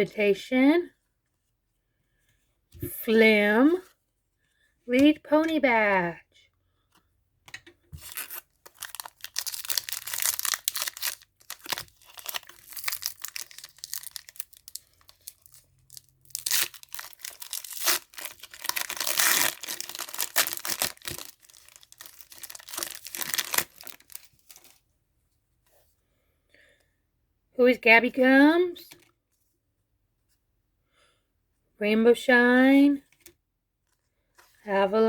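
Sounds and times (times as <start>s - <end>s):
wrapper torn open and crinkled: 8.0s - 24.8s.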